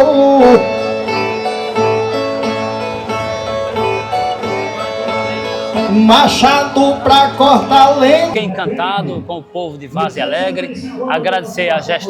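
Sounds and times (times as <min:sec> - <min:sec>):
steel-strung guitar plucked melody: 0:00.0 - 0:08.5.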